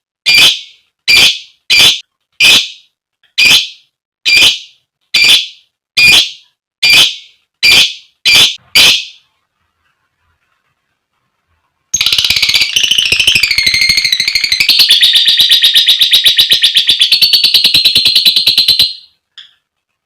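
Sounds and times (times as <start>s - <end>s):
lovebird chattering trill: 12.0s - 19.1s
bird chirp: 12.0s - 19.6s.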